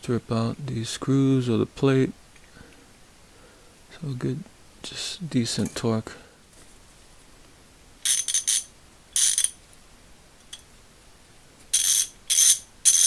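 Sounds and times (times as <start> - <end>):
ratchet clicking: 8.1 - 9.6, 11.8 - 13.0.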